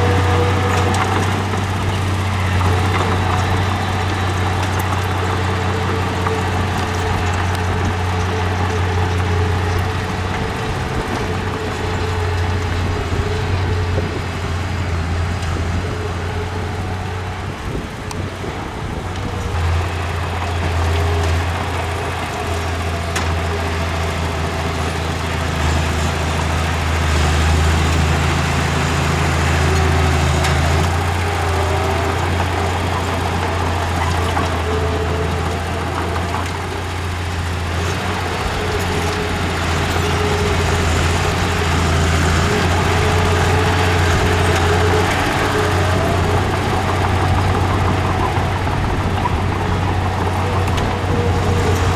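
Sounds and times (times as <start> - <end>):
heavy machinery diesel engine: 0.0 - 51.9.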